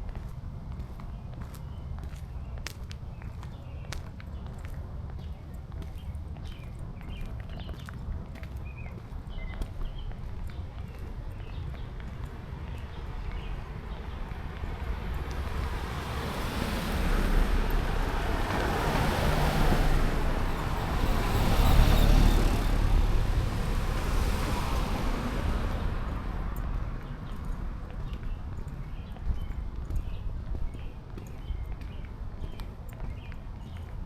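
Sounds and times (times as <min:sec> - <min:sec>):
car driving past: 0:14.9 - 0:26.7.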